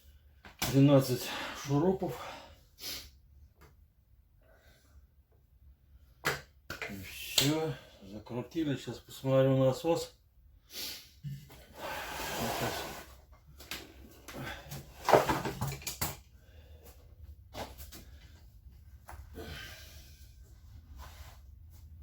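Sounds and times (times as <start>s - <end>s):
clicks and knocks of parts: 14.7s - 16.3s.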